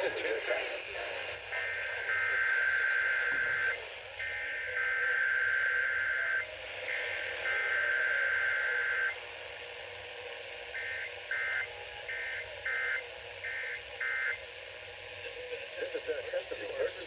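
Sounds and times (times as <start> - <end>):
screechy digital data bursts: 1.5 - 9.2.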